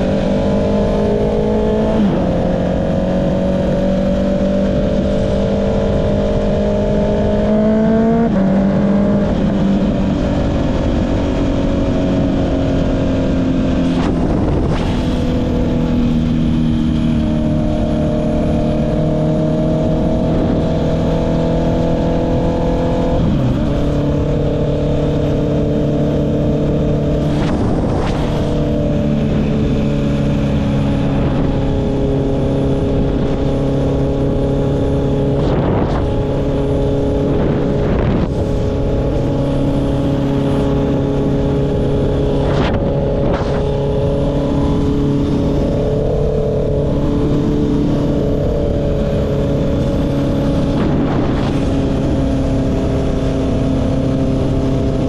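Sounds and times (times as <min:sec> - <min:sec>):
motorcycle engine cruising: 0:00.0 - 0:55.0
whooshing sweeps: 0:27.1 - 0:31.7.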